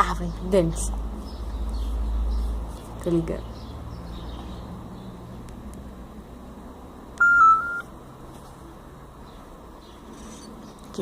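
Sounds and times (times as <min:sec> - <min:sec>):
phone electronic beep tone: 0:07.2 - 0:07.9.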